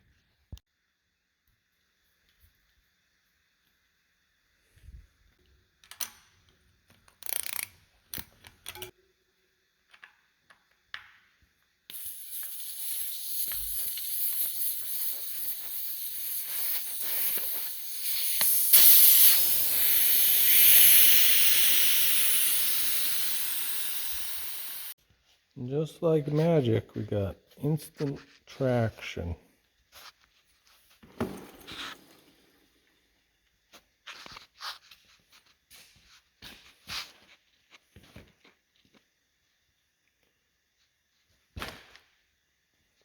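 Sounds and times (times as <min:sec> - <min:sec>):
compressed air hissing into tire: 0:11.9 - 0:25.0.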